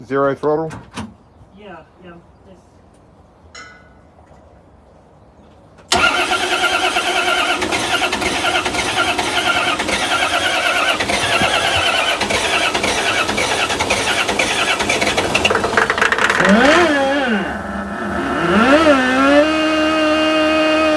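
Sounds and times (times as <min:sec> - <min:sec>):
diesel engine starting and running: 0:05.9 - 0:20.9
high engine whine: 0:05.9 - 0:20.9.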